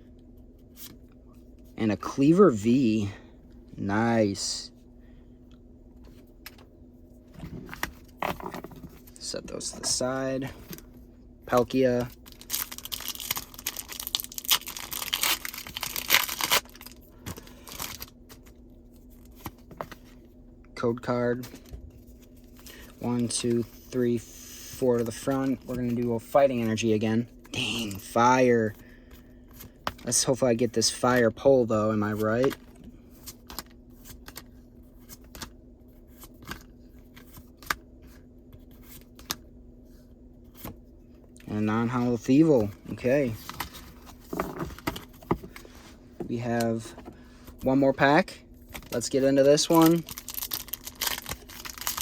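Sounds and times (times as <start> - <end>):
faint steady hum: 0.0 - 52.0
foil wrapper tearing and crinkling: 12.2 - 18.1, 49.6 - 52.0.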